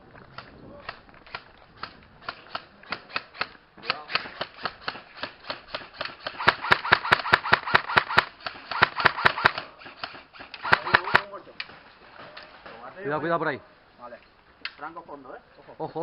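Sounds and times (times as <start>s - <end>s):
airsoft gun shots: 0.8s - 11.4s.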